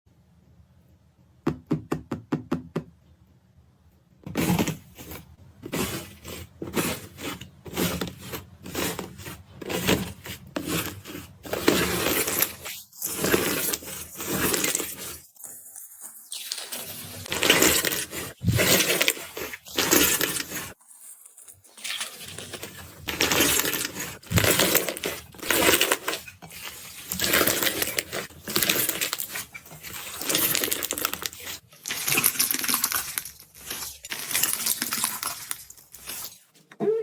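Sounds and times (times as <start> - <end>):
slime crust crunching: 21.7 - 36.4.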